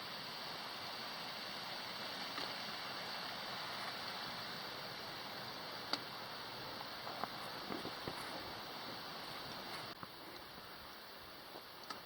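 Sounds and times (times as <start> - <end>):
waterfall and stream rushing: 0.0 - 12.0
footsteps on a trail: 7.0 - 10.2.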